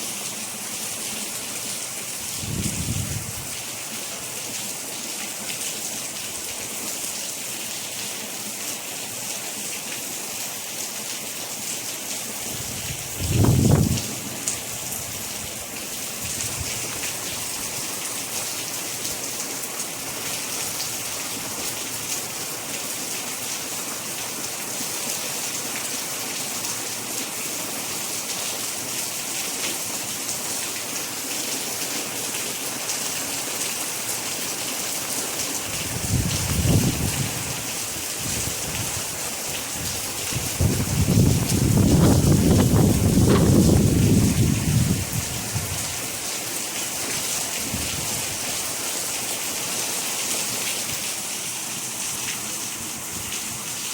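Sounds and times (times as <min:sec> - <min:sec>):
steady rain: 0:00.0 - 0:53.9.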